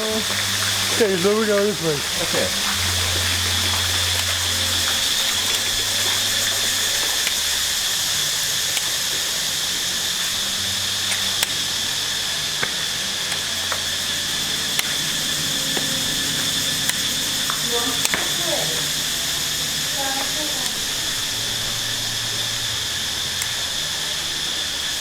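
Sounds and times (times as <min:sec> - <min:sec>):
insects buzzing: 0:00.0 - 0:25.0
faint clicks: 0:10.2 - 0:23.8.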